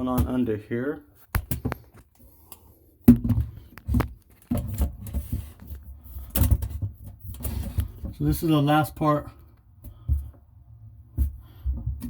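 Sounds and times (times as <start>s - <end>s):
handling knocks and clicks: 1.2s - 2.2s, 3.0s - 8.4s.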